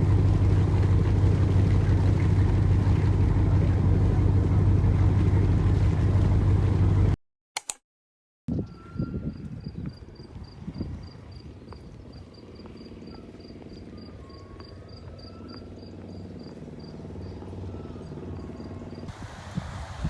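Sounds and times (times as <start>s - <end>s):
low steady hum: 0.0s - 7.2s
cricket chirping: 9.6s - 19.0s.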